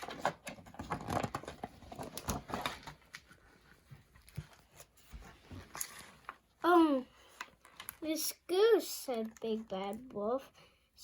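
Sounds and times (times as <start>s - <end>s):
paper rustling and clicking: 0.0s - 6.4s, 7.2s - 8.1s.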